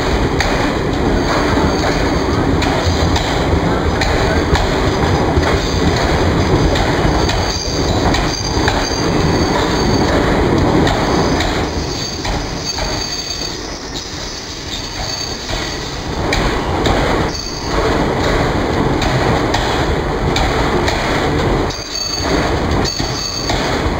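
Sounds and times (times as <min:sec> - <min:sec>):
train wheels clicking over rail joints: 0:00.0 - 0:23.9
faint high wheel squeal: 0:11.2 - 0:16.0.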